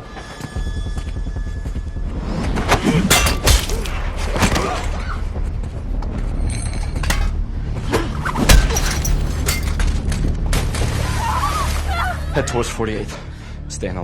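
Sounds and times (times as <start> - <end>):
crashing and shattering: 3.1 - 4.7, 7.0 - 7.4, 8.4 - 9.9.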